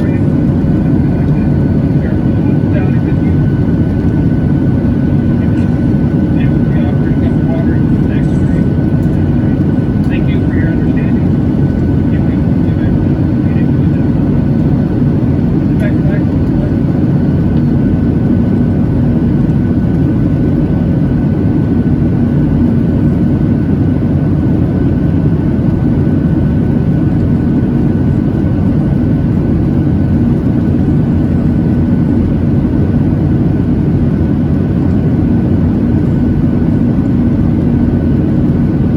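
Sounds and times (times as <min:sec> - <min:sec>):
aircraft engine rumble: 0:00.0 - 0:38.9.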